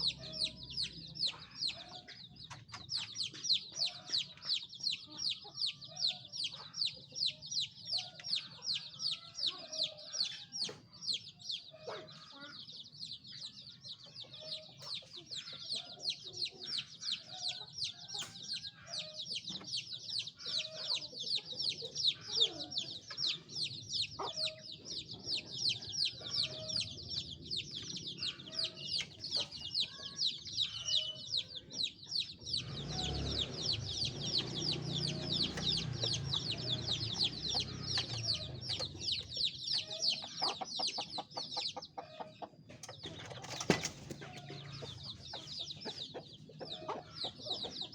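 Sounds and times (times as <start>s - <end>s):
chicks peeping: 0.0s - 47.9s
low clucks: 32.5s - 47.9s.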